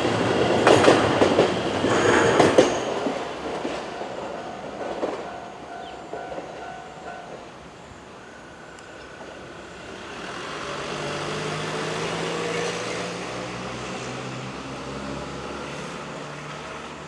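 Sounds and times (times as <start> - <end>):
vehicle passing by: 10.1 - 17.0.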